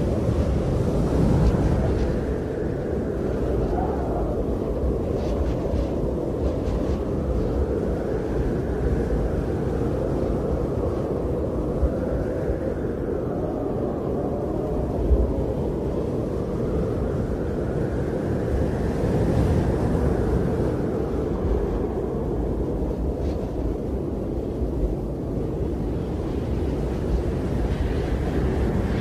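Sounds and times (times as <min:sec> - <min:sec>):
blizzard wind blowing: 0:00.0 - 0:29.0
wind buffeting microphone: 0:00.0 - 0:29.0.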